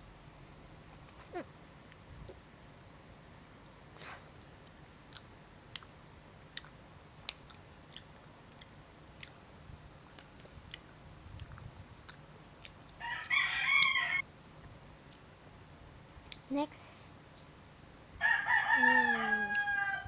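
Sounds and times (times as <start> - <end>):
faint chewing: 4.0 - 14.0, 15.0 - 15.3
wet mouth clicks: 5.1 - 5.9, 6.5 - 9.4, 10.1 - 13.0
rooster crowing: 13.0 - 14.2, 18.2 - 20.0.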